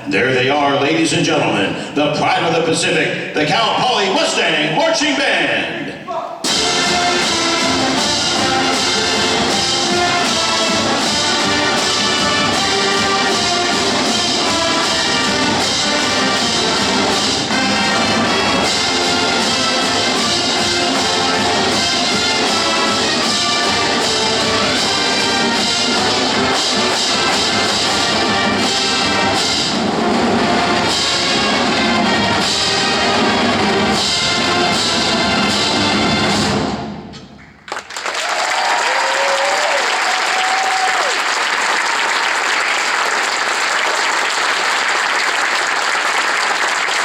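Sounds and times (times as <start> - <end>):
steady drum beat: 6.4 - 36.6
trumpets and trombones: 6.4 - 37.0
marching band playing: 6.4 - 37.1.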